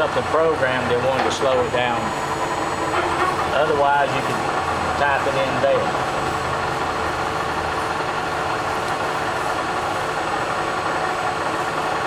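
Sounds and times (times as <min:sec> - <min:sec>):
lathe humming and whining: 0:00.0 - 0:12.0.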